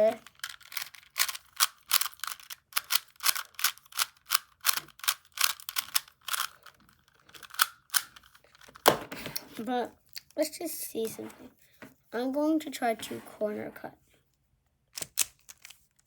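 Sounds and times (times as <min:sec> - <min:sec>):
puzzle cube layers clicking: 0:00.2 - 0:08.2.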